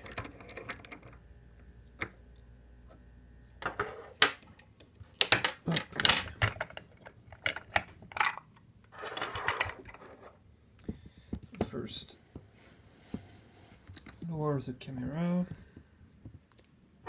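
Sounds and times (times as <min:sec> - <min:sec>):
metal lock tools clicking and rattling: 0:00.0 - 0:01.2, 0:05.2 - 0:08.6.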